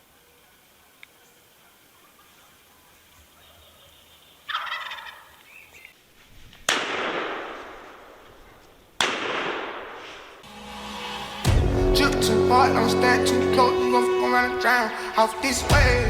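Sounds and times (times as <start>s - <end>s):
turkey gobbling: 0.3s - 5.9s
echoing shotgun shots: 6.7s - 8.2s, 9.0s - 10.4s.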